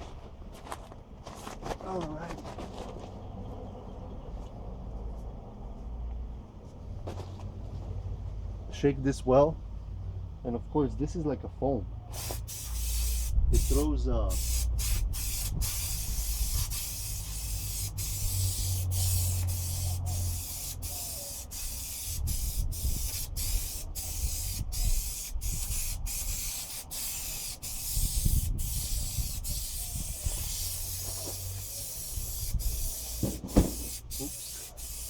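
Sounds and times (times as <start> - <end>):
aerosol can spraying hiss: 12.2 - 35.0.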